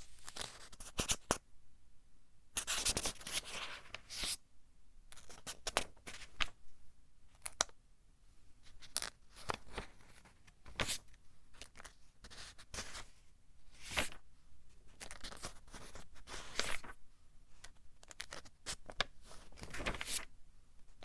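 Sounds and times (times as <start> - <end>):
book pages turning: 17.6 - 20.3.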